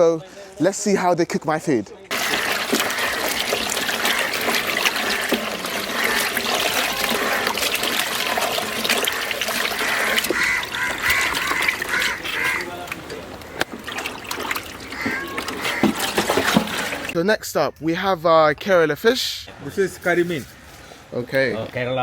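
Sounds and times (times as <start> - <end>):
ducks quacking: 2.1 - 17.2
water trickling: 2.1 - 17.2.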